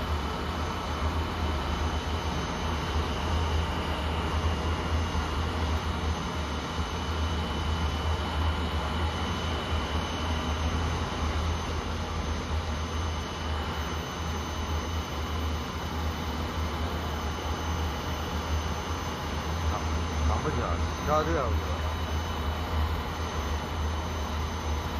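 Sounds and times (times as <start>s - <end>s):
furnace running hum and roar: 0.0s - 24.9s
thin high whine: 9.0s - 24.9s.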